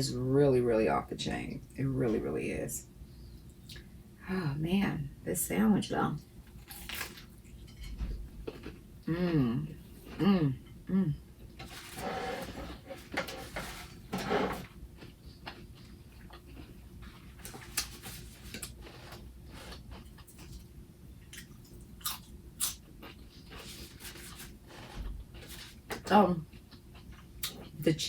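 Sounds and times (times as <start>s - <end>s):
person chewing sandwich: 11.4s - 27.8s.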